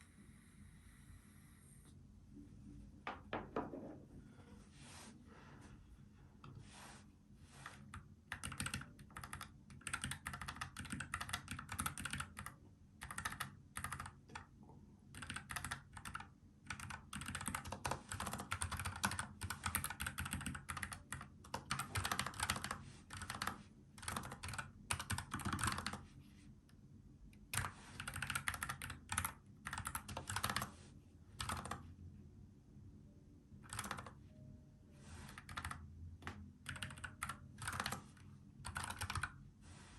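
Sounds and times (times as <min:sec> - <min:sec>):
mechanical keyboard typing: 0:07.9 - 0:14.5, 0:15.1 - 0:26.0, 0:27.5 - 0:30.7, 0:31.4 - 0:31.8, 0:33.6 - 0:34.2, 0:35.3 - 0:39.4.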